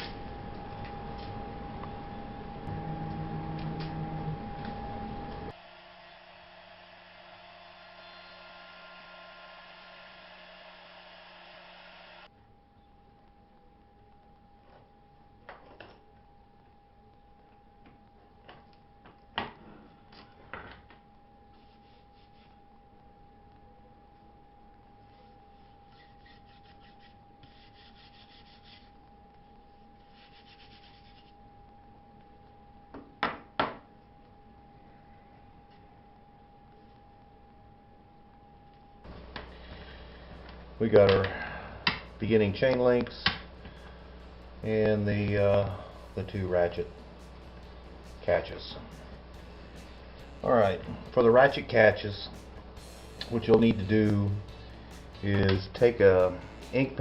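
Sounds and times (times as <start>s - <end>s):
faint high hum: 0.0s - 57.0s
router spindle whirring hum: 0.2s - 12.3s
rapid rubbing strokes on wood: 25.1s - 29.0s, 30.0s - 31.3s.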